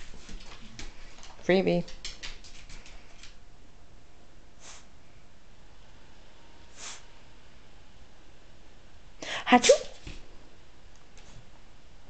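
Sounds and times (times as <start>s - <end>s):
dog snorting sneezes: 4.6s - 4.9s, 6.7s - 7.0s, 9.6s - 10.0s.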